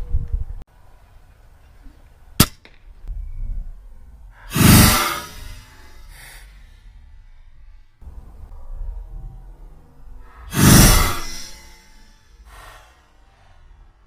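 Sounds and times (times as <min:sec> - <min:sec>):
suppressed air rifle shot: 0:02.4 - 0:03.4
rushing burst: 0:03.0 - 0:14.0.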